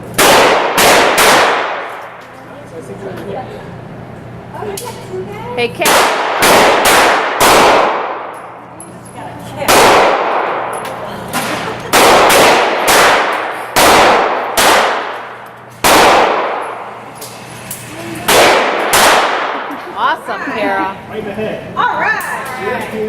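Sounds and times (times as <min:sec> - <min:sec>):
echoing pistol shots: 0:00.1 - 0:02.0, 0:05.8 - 0:08.4, 0:09.7 - 0:10.7, 0:11.9 - 0:16.9, 0:18.3 - 0:19.7.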